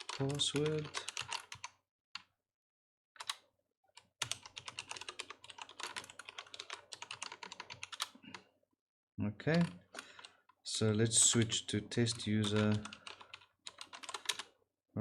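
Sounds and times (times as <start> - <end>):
typing on computer keyboard: 0.0 - 2.3, 3.2 - 3.4, 4.0 - 8.4, 9.5 - 10.4, 11.1 - 14.6.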